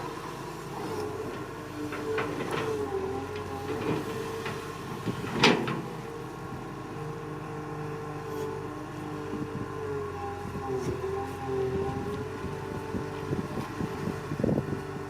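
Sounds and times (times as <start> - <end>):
excavator engine running: 0.0 - 15.0.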